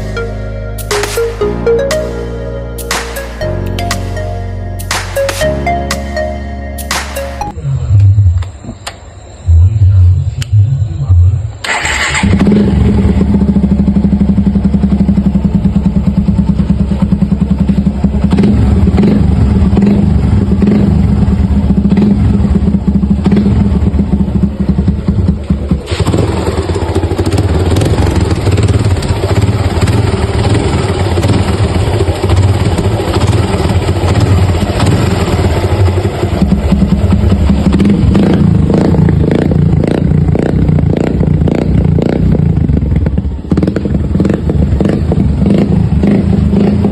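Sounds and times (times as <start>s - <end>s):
motorcycle engine knocking clatter: 12.9s - 46.9s.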